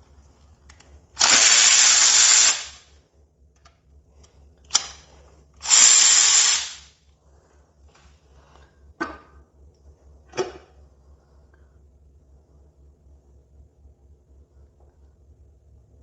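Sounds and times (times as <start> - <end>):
power tool running: 1.2 - 2.8, 5.6 - 6.9.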